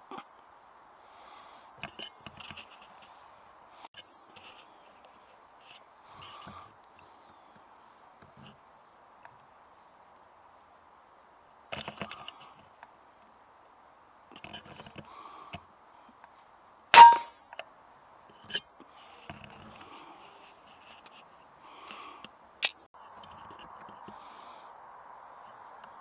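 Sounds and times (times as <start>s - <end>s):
air rifle shot with metallic ring: 17.0s - 17.4s.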